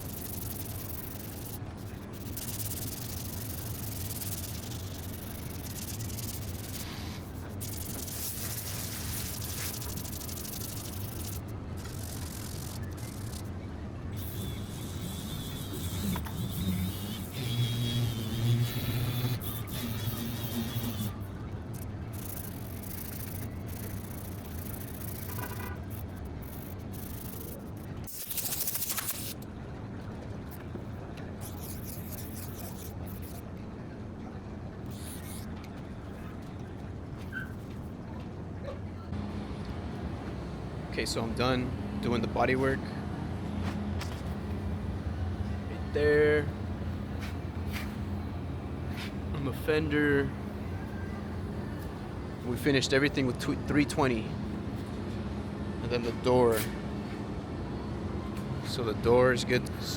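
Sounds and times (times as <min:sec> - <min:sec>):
sandpaper rubbing body filler: 0:00.0 - 0:13.5, 0:14.2 - 0:29.4, 0:31.4 - 0:33.4, 0:47.1 - 0:48.2
low machine hum: 0:00.0 - 0:28.1, 0:38.0 - 0:59.9
sanding rasp: 0:14.2 - 0:21.2.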